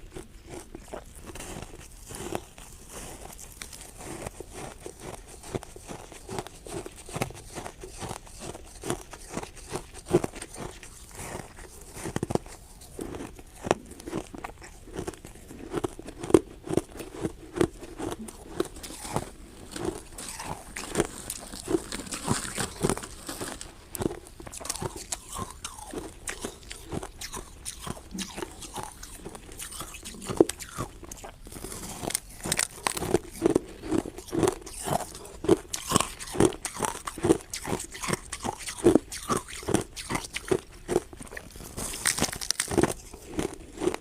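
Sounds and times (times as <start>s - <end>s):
ice being chewed: 0.0s - 44.0s.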